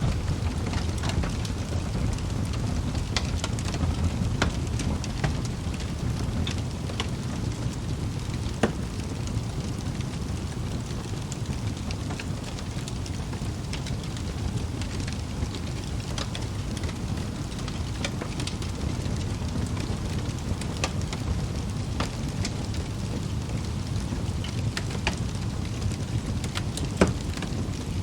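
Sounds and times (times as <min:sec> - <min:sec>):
logs crackling and popping: 0:00.0 - 0:28.0
low rumble of flames: 0:00.0 - 0:28.0.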